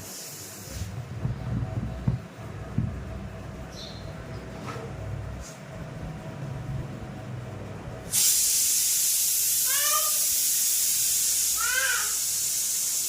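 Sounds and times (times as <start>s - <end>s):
pressure cooker whistle hissing: 8.1s - 13.0s.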